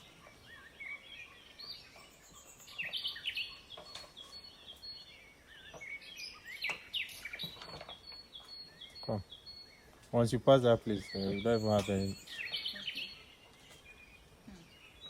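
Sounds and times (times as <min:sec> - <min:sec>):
birds chirping and calling: 0:00.0 - 0:15.0.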